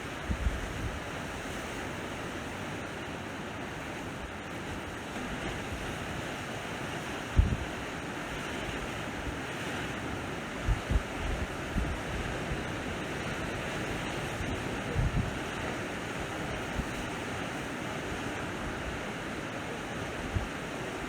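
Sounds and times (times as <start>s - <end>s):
sea waves washing onto shore: 0.0s - 21.0s
wind buffeting microphone: 0.1s - 1.1s, 7.3s - 7.8s, 10.5s - 17.2s.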